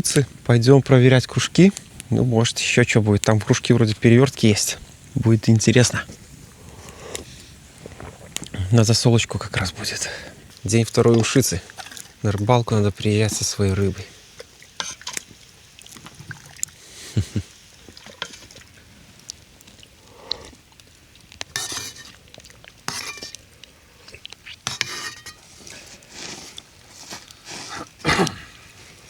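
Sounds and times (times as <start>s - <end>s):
liquid being poured: 9.6s - 23.6s
cutlery and dishes clinking: 21.6s - 22.1s, 22.9s - 23.4s, 24.7s - 25.4s.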